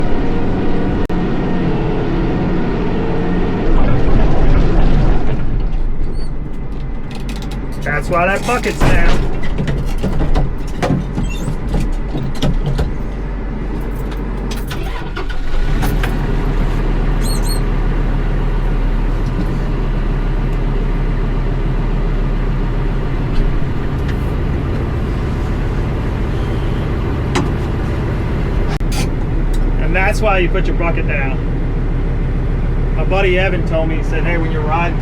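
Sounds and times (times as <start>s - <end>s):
tractor diesel engine running: 0.0s - 35.0s
knocks and rattles: 5.6s - 15.0s, 23.2s - 29.3s.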